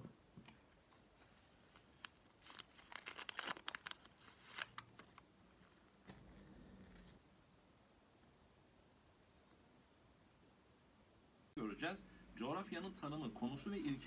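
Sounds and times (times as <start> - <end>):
crinkling rustles: 0.5 - 6.2.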